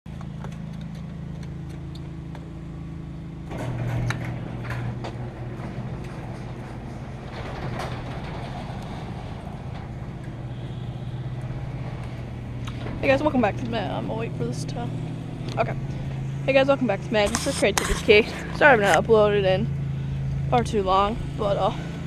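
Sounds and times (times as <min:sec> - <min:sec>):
motorcycle engine running: 0:09.9 - 0:22.0.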